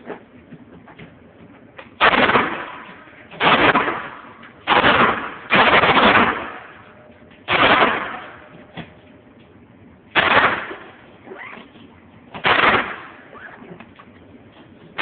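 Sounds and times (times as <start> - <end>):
loud gunshots with echo: 2.0 - 8.6, 10.1 - 11.1, 12.3 - 13.7.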